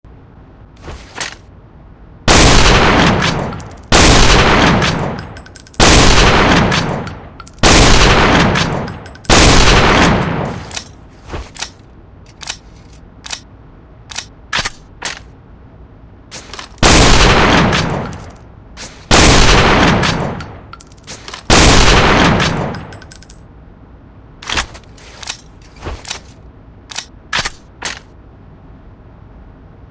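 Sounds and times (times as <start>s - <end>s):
rifle shots echoing: 2.3s - 10.7s, 16.8s - 18.3s, 19.1s - 20.7s, 21.5s - 23.0s.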